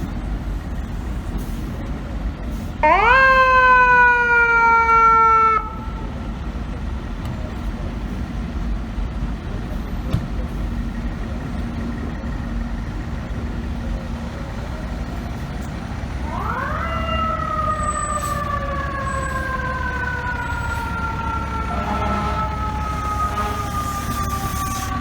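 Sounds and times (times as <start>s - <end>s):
traffic and engine rumble: 0.0s - 25.0s
fire truck siren: 2.8s - 6.4s, 13.5s - 25.0s.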